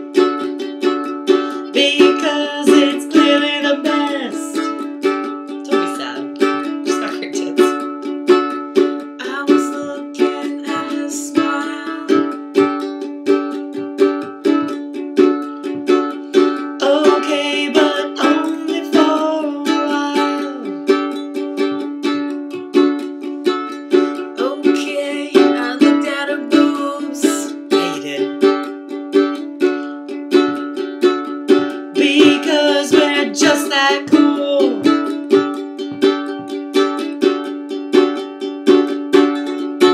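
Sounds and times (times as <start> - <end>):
person singing: 0.0 - 7.9, 9.0 - 14.9, 15.6 - 21.8, 23.7 - 29.2, 31.6 - 37.5
ukulele strumming: 0.0 - 39.9.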